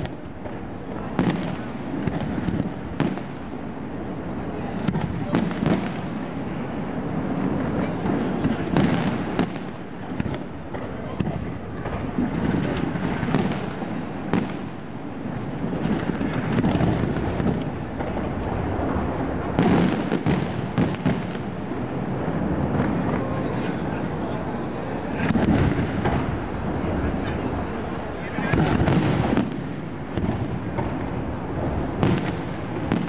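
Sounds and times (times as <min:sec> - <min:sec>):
fireworks bangs: 0:00.0 - 0:33.0
fireworks rumble and crackle: 0:00.0 - 0:33.0.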